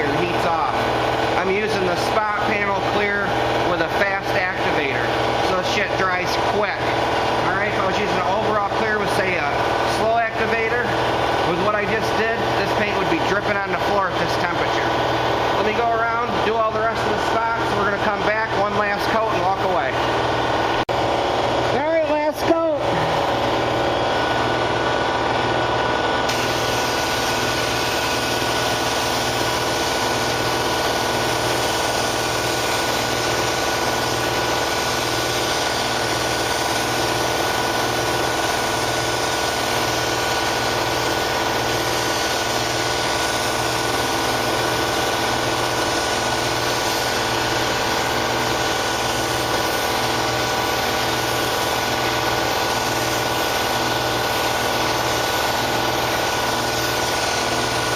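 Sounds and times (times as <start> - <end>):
machinery hum: 0.0 - 57.9
paint spray gun hiss: 26.3 - 57.9.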